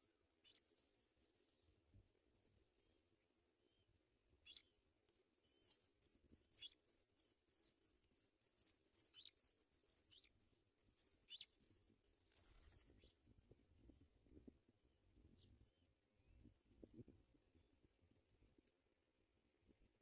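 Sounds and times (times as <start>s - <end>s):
nestlings cheeping: 5.1s - 12.9s.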